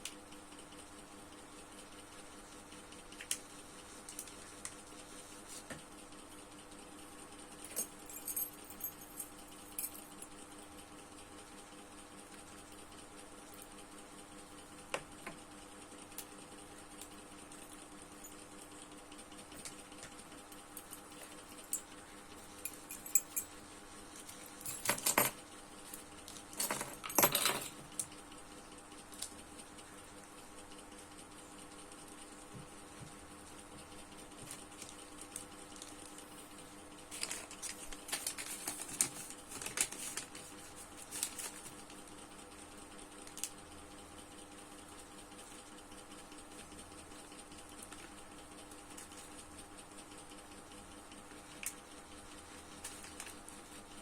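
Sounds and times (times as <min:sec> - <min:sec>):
faint steady hum: 0:00.0 - 0:54.0.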